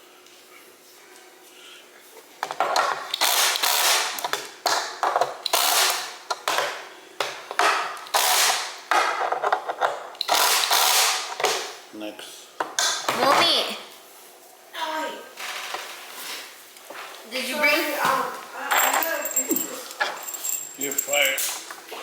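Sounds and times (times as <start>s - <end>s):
power screwdriver driving screws: 3.1s - 4.3s, 5.4s - 6.2s, 8.1s - 8.8s, 10.2s - 11.6s.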